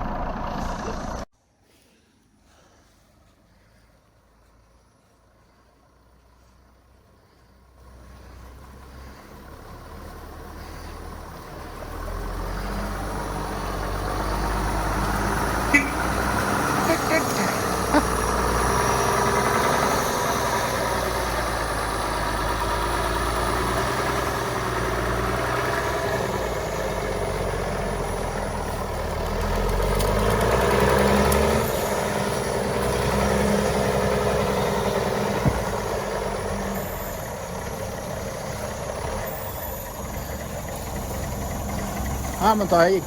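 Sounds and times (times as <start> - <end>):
truck diesel engine running: 0.0 - 1.3, 3.5 - 43.0.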